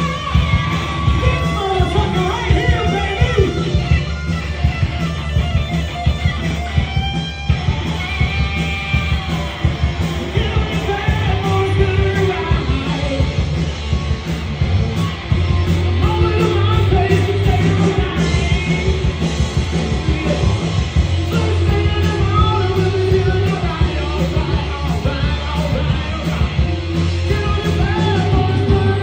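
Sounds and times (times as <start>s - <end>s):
distorted electric guitar solo: 0.0s - 21.6s
rock band playing: 0.0s - 29.0s.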